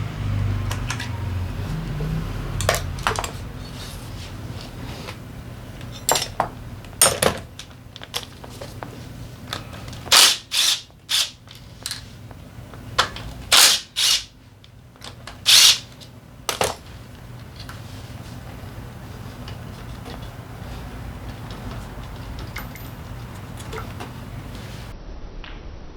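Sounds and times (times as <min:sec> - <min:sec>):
sharp tool bursts and clicks: 0:10.1 - 0:11.4, 0:13.0 - 0:14.3, 0:15.4 - 0:15.9.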